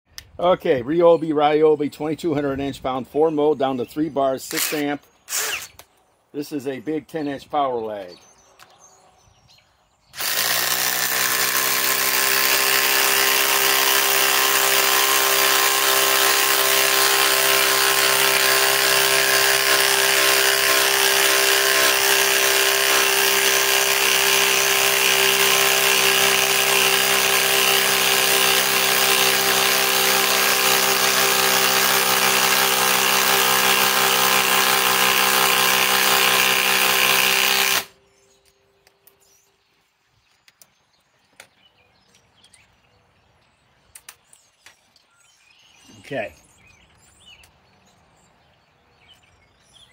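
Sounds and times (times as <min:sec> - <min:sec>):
impact driver hammering: 0:10.2 - 0:38.0.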